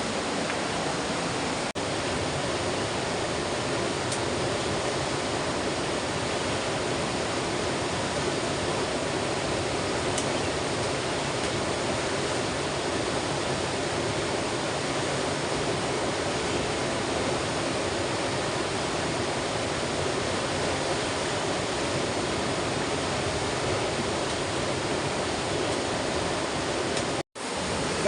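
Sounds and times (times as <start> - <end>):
river water rushing: 0.0 - 28.0.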